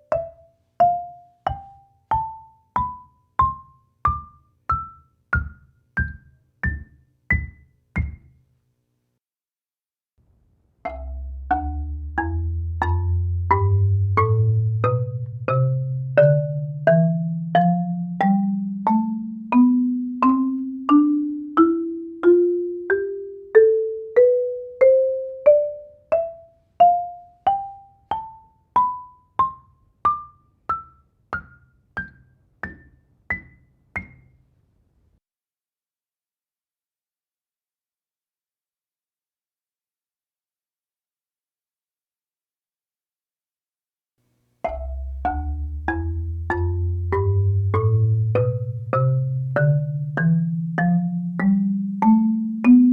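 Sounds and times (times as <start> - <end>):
marimba ascending scale: 10.9 - 29.6, 44.7 - 52.9.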